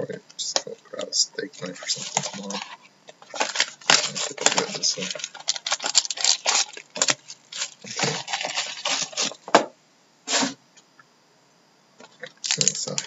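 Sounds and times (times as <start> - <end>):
wrapping tearing and crinkling: 1.4 - 9.5, 12.2 - 13.0.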